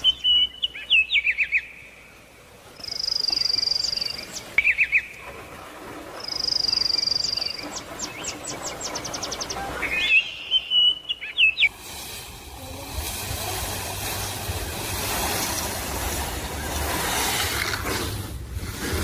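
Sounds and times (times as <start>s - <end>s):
bird whistled call: 0.0s - 1.9s, 2.8s - 5.3s, 6.2s - 11.7s
low rushing rumble: 11.7s - 19.0s.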